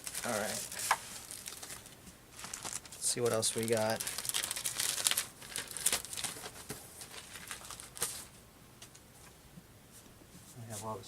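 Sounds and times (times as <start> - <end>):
packaging crinkling and rustling: 0.0 - 8.3.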